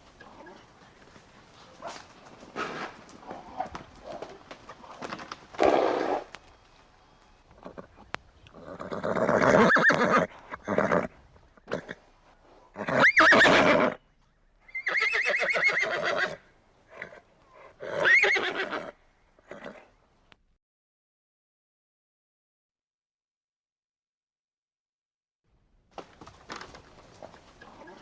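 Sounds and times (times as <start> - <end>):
horses whinnying: 7.6 - 12.0, 12.8 - 14.0, 14.7 - 17.2, 17.8 - 19.9.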